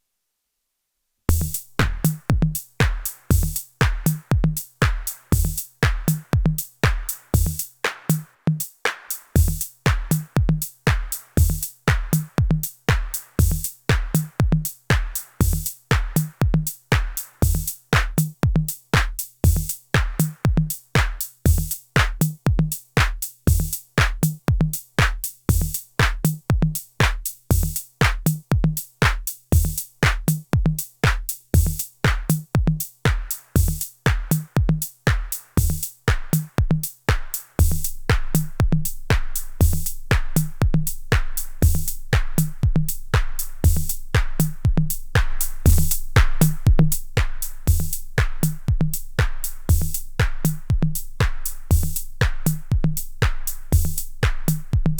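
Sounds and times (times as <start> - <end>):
drum machine beat: 1.3 - 54.9.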